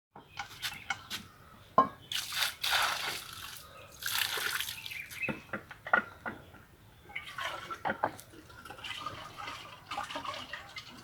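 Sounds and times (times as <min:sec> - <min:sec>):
wet splashing and dripping: 0:02.1 - 0:05.3.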